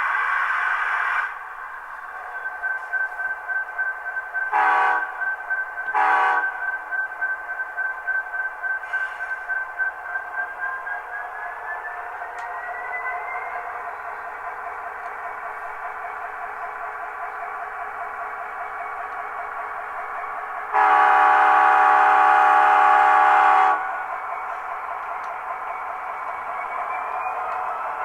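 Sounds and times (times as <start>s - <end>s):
locomotive horn blast: 4.5s - 5.2s, 5.9s - 6.5s, 20.7s - 24.0s.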